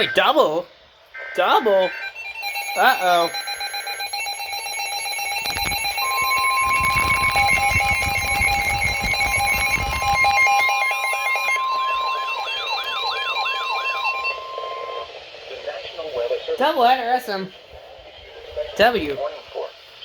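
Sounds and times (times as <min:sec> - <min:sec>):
steady attention tone: 0:01.2 - 0:16.8
buzzy electronic chatter: 0:01.3 - 0:19.1
warbling alert tone: 0:01.7 - 0:15.0.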